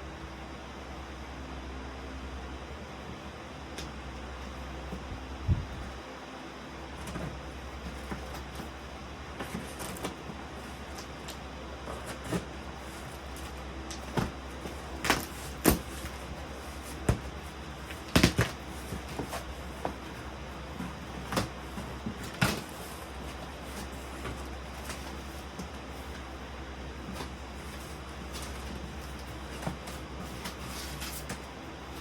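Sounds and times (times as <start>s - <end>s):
box and packing rustling: 6.9s - 32.0s.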